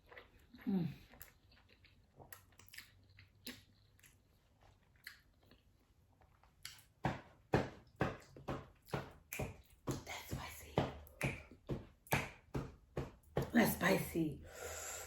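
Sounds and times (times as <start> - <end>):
chewing noodles: 0.0 - 7.0.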